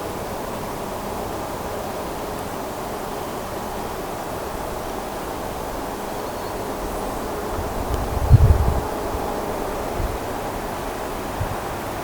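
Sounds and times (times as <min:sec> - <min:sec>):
wind buffeting microphone: 0:05.7 - 0:12.0
low rumbling gust: 0:06.6 - 0:11.6.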